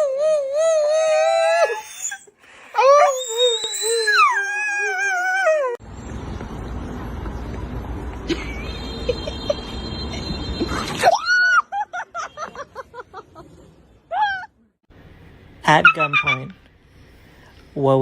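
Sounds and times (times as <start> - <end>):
dog howling: 0.0 - 5.8.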